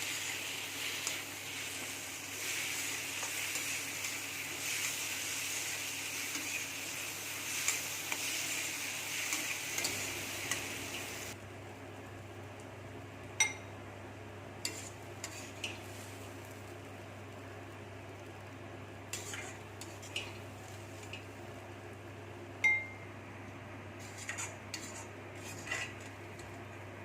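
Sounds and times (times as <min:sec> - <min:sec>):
vegetable sizzling in oil: 0:00.0 - 0:11.4, 0:14.7 - 0:16.9, 0:19.1 - 0:21.4
spatula stirring: 0:00.1 - 0:10.7, 0:14.6 - 0:16.0, 0:19.1 - 0:20.4, 0:24.0 - 0:26.5.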